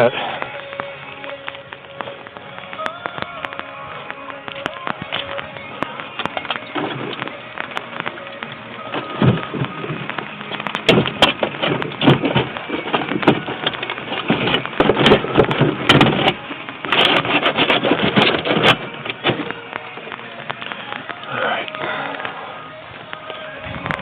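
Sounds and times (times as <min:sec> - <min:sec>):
rustling: 0:00.0 - 0:24.0
knocking and clattering: 0:09.0 - 0:19.5.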